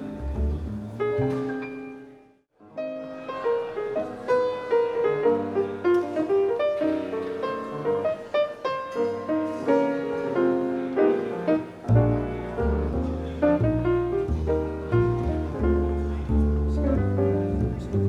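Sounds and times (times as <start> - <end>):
deep bass notes: 0.0 - 1.2, 11.9 - 18.0
jazz piano: 0.0 - 18.0.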